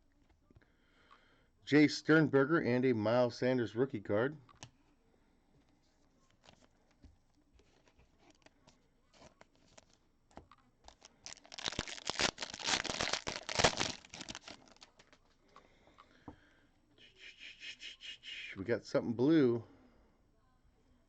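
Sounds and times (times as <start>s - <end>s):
wrapper tearing and crinkling: 10.9s - 15.2s.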